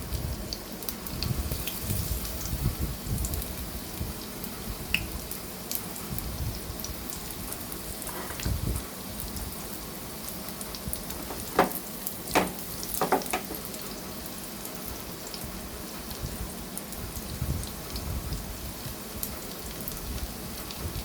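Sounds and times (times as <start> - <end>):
food deep-frying in hot oil: 0.0 - 21.0
sharp knocks: 11.2 - 13.6.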